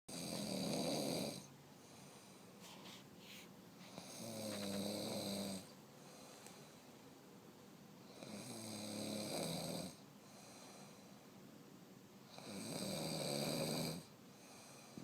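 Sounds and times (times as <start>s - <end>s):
woman snoring: 0.1s - 1.5s, 4.0s - 5.7s, 8.1s - 10.0s, 12.3s - 14.1s
faint breath: 1.8s - 4.2s, 5.9s - 7.1s, 10.2s - 11.4s, 14.2s - 15.0s.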